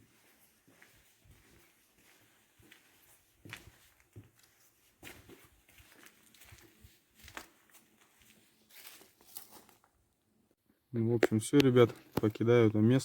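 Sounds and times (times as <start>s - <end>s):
footsteps crunching over debris: 0.0s - 10.0s.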